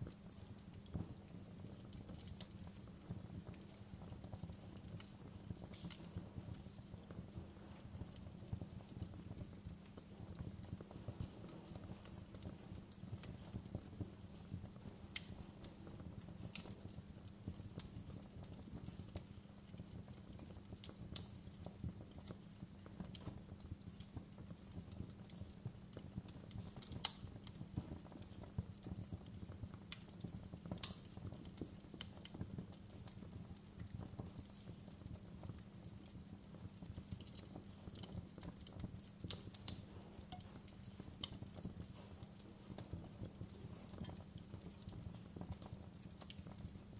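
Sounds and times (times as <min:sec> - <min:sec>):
wood fire crackling: 0:00.0 - 0:46.9.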